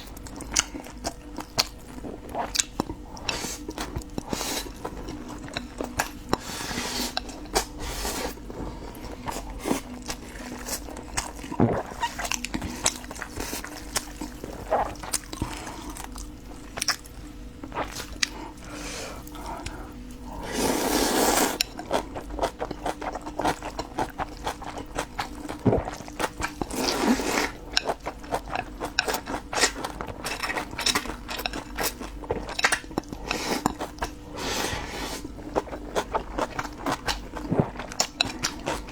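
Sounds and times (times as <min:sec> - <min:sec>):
person chewing and smacking: 0:00.0 - 0:20.4, 0:21.6 - 0:34.3, 0:35.2 - 0:38.9
slurping: 0:06.3 - 0:16.2, 0:17.7 - 0:22.5, 0:25.6 - 0:27.9.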